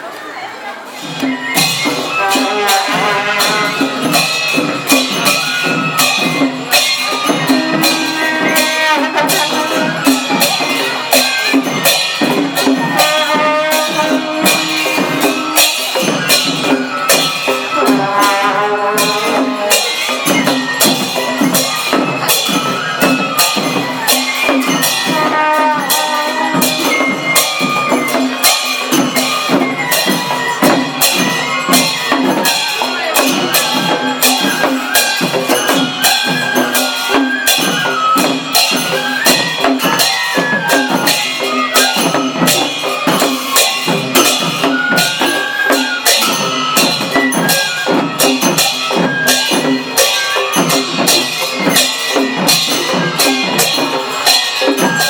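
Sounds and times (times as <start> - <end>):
melody over jingling percussion: 0.9 - 55.0.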